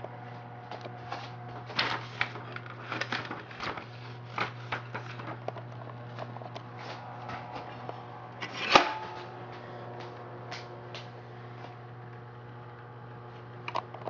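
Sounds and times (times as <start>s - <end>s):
typewriter motor hum: 0.7s - 7.1s.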